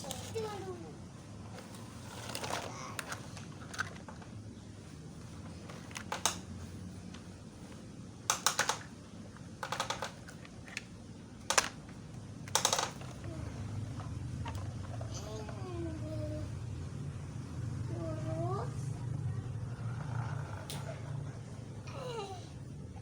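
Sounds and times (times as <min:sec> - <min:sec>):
plastic toy trucks clattering: 0:00.0 - 0:00.7, 0:01.6 - 0:04.4, 0:08.3 - 0:08.9, 0:09.6 - 0:10.9, 0:11.5 - 0:15.6.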